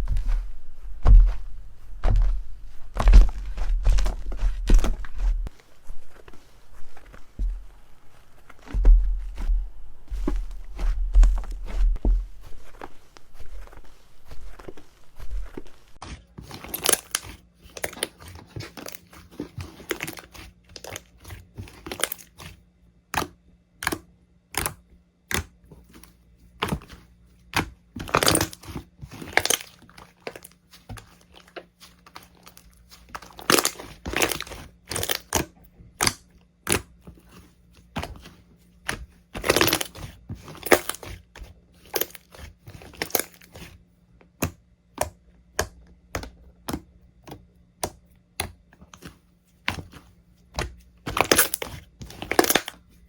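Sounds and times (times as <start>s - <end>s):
slime crackling and popping: 51.1s - 52.8s.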